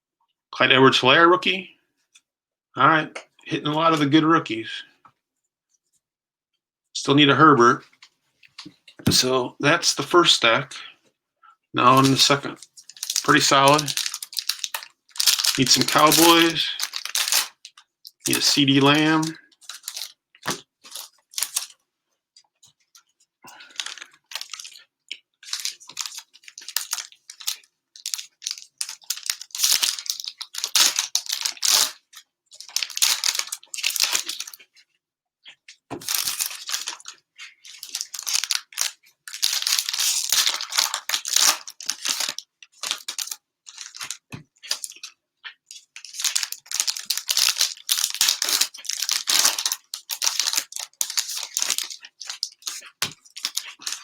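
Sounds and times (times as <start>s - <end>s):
cellophane wrappers tearing and crinkling: 11.9s - 20.2s, 20.8s - 21.8s, 23.7s - 24.8s, 25.4s - 34.6s, 36.0s - 54.0s.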